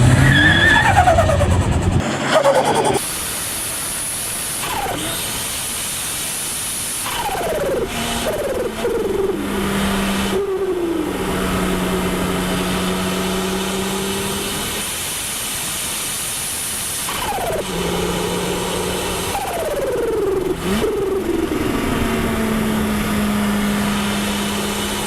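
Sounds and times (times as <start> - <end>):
car engine revving: 0.0 - 3.1, 7.0 - 14.9, 17.1 - 25.0.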